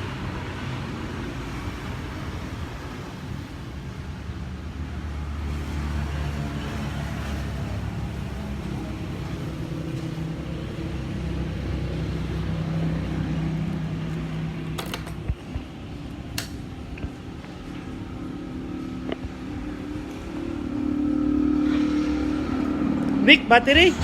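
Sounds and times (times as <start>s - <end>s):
motorcycle engine running: 7.8s - 24.0s.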